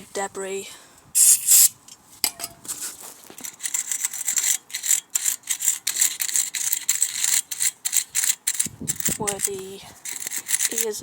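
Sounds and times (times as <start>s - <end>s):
brush scrubbing metal: 1.2s - 1.7s.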